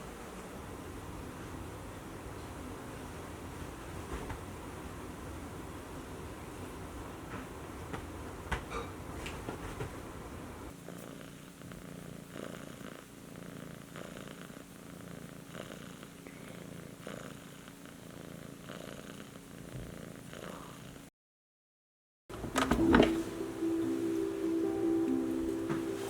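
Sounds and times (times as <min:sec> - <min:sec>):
kitten purring: 0:10.7 - 0:21.1.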